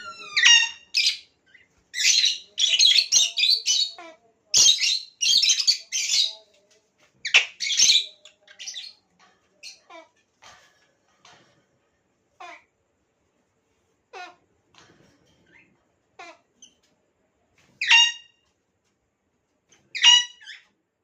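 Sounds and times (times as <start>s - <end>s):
lovebirds squawking: 0.0s - 1.2s.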